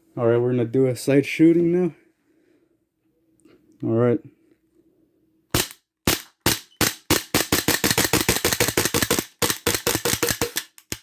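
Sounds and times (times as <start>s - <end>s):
airsoft pistol rapid shots: 5.6s - 11.0s.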